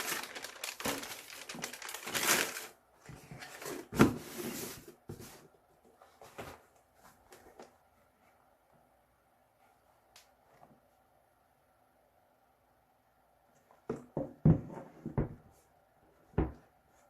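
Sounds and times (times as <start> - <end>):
paper packaging crinkling: 0.0 - 2.8.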